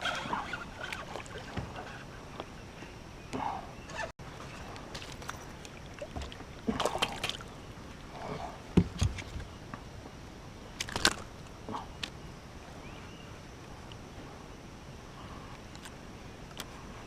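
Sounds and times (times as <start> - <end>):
knocks and rattles in a kayak: 0.0 - 2.6, 8.2 - 9.5
water splashes: 4.3 - 7.6.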